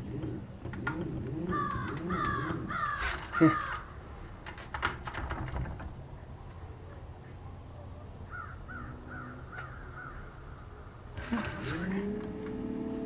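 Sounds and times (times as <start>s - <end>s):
bird calling: 0.0s - 4.4s, 6.1s - 13.0s
steady low rumble: 5.5s - 13.0s.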